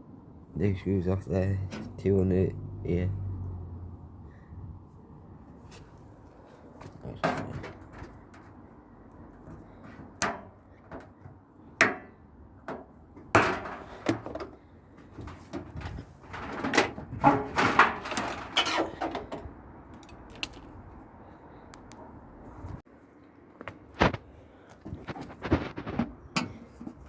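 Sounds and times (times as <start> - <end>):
metal knocks clunks and rattles: 1.6 - 2.2, 6.8 - 8.6, 9.4 - 20.6
clatter and scraping: 12.7 - 20.8, 24.9 - 27.0.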